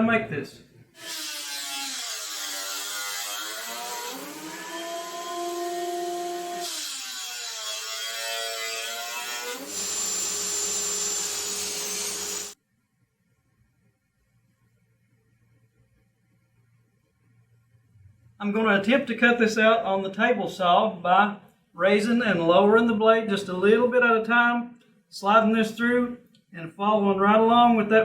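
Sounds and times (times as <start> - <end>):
power tool motor whine: 9.4 - 12.6.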